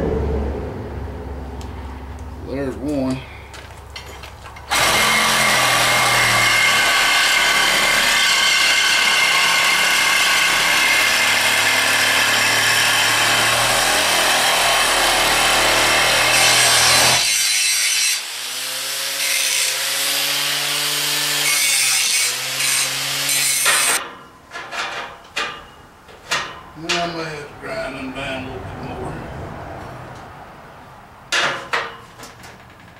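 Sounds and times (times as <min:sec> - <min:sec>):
saw motor hum: 0:04.7 - 0:24.0
reciprocating saw cutting metal: 0:04.7 - 0:25.8.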